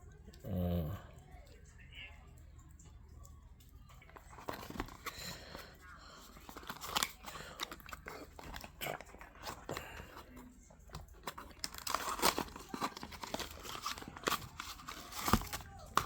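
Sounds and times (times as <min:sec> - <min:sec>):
packaging rustling and crinkling: 0:04.0 - 0:16.0.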